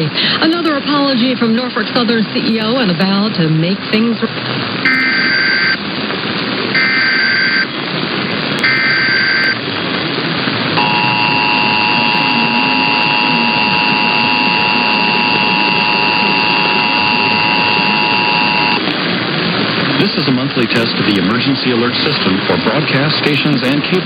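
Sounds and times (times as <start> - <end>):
radio static hiss: 0.0 - 24.0
steady two-tone attention signal: 4.8 - 5.8, 6.8 - 7.7, 8.6 - 9.6, 10.8 - 19.0
raspy two-tone digital bursts: 4.9 - 5.8, 6.8 - 7.7, 8.6 - 9.6.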